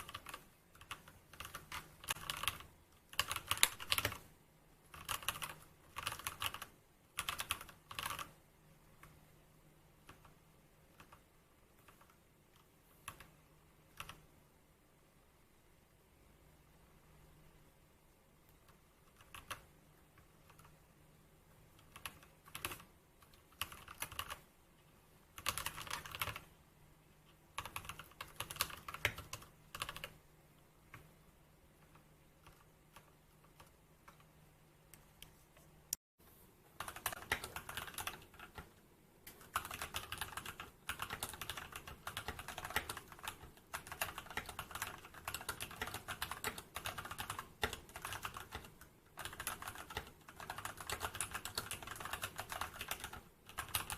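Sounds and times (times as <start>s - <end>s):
typing on mechanical keyboard: 0.0s - 4.3s, 4.9s - 8.4s, 10.0s - 11.2s, 13.9s - 14.2s, 19.0s - 20.8s, 21.8s - 24.4s, 25.4s - 26.5s, 27.6s - 30.2s, 36.8s - 38.7s, 39.3s - 53.9s.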